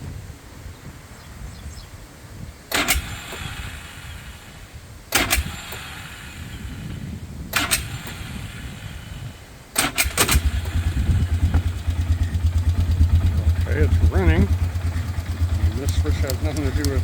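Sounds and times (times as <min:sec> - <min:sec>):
atv engine starting and idling: 0:02.7 - 0:17.0
engine backfire bangs: 0:09.8 - 0:17.0.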